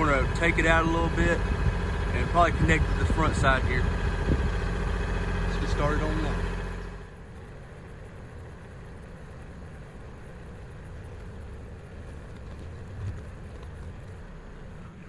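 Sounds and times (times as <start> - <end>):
tractor diesel engine running: 0.0 - 7.5.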